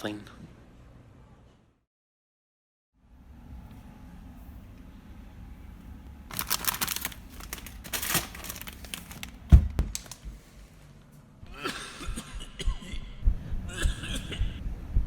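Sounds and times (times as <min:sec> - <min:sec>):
crinkling rustling noise: 0:06.3 - 0:10.9.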